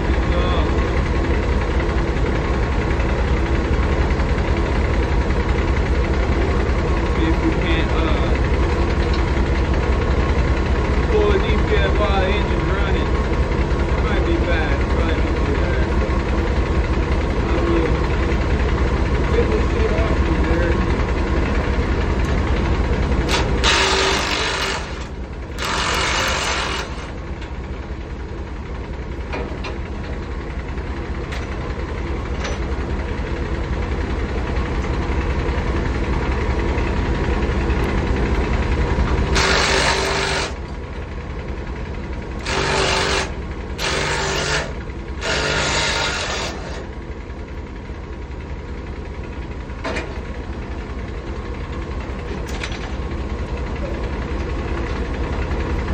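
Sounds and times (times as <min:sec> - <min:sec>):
diesel truck engine idling: 0:00.0 - 0:55.9
power tool rattling: 0:13.2 - 0:28.0, 0:37.5 - 0:41.2, 0:41.8 - 0:47.2.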